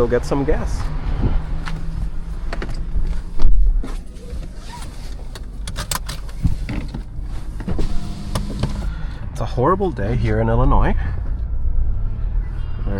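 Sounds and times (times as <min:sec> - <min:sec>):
car engine rumble from inside: 0:00.0 - 0:12.9
heavy low thump: 0:01.0 - 0:01.6.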